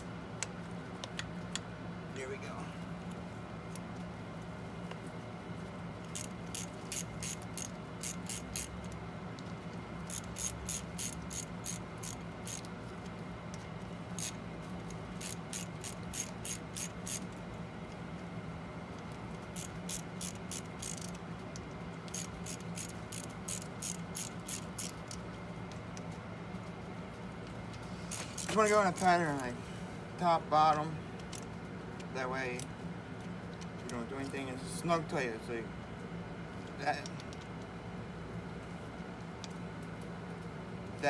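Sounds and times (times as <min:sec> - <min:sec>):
ratchet wrench clicking: 0:06.0 - 0:09.0, 0:10.0 - 0:12.7, 0:14.2 - 0:17.4, 0:19.5 - 0:25.2, 0:28.1 - 0:29.1.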